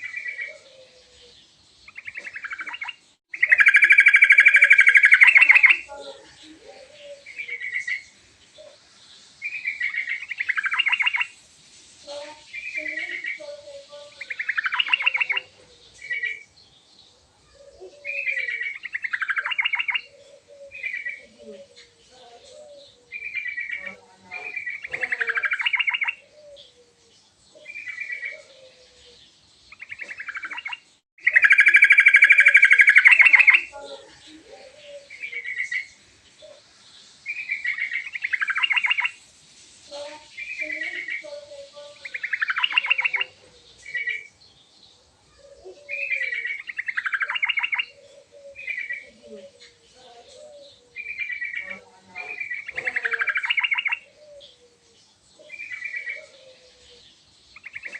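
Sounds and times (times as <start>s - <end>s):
bird singing bubbly phrases: 1.9s - 8.8s, 9.4s - 11.4s, 12.0s - 16.5s, 17.6s - 26.8s, 27.6s - 36.6s, 37.2s - 39.2s, 39.9s - 44.4s, 45.3s - 57.9s.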